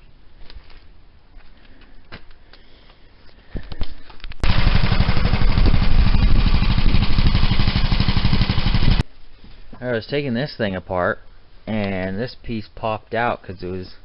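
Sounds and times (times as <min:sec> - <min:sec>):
tractor engine running: 0:04.4 - 0:09.0.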